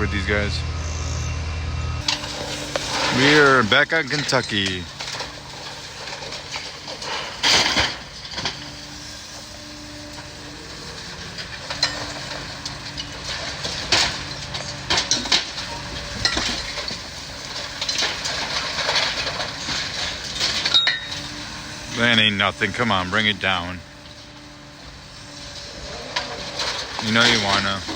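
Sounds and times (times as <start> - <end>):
excavator engine hum: 0.0 - 27.9
falling debris crashing: 2.0 - 27.9.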